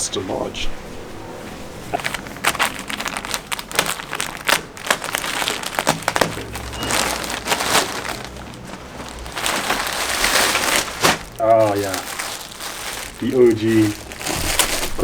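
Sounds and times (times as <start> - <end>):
plastic packaging crinkling: 1.8 - 15.0.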